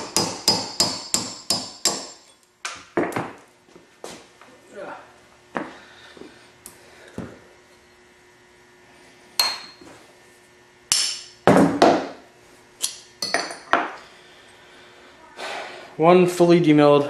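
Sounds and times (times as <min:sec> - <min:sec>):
hammer striking steel punch: 0:00.0 - 0:02.3, 0:10.9 - 0:12.1.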